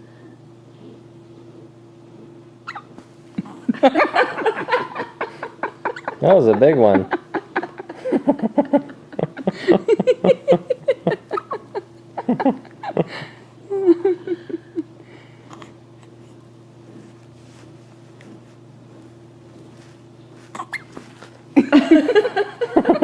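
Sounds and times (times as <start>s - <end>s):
low steady hum: 0.0s - 23.0s
soft laughter: 3.4s - 15.0s.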